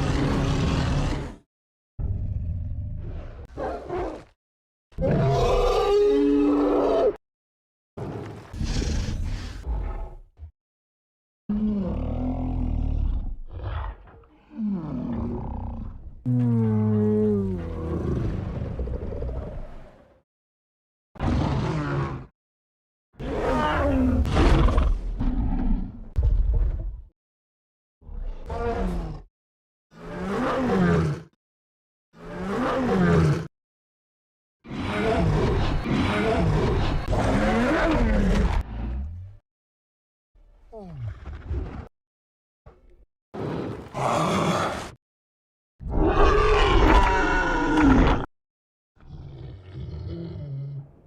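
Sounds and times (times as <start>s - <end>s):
giant ape roaring: 5.0s - 7.2s, 11.5s - 20.0s, 23.2s - 26.0s, 28.2s - 29.3s, 34.7s - 39.0s, 43.8s - 45.0s, 45.8s - 48.3s, 49.0s - 50.8s
monster roars: 34.7s - 38.9s, 43.9s - 45.0s, 45.8s - 48.3s.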